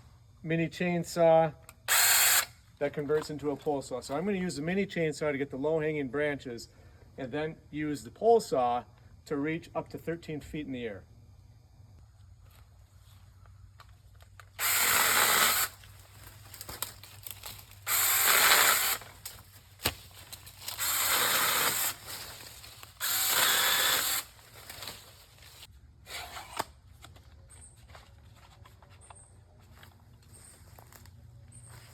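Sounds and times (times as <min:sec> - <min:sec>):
electric chainsaw cutting branches: 0:01.9 - 0:02.6, 0:14.4 - 0:26.8.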